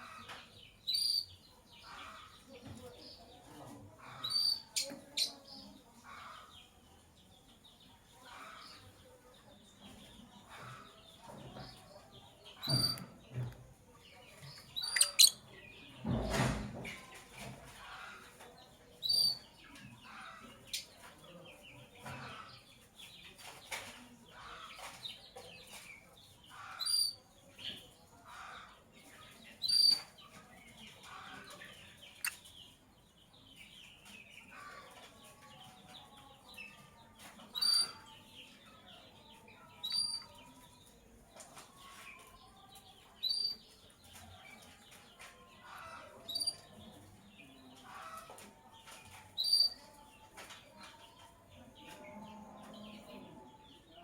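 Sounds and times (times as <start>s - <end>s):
birds chattering and twittering: 0.0s - 54.0s
lovebirds shrieking: 14.8s - 15.4s.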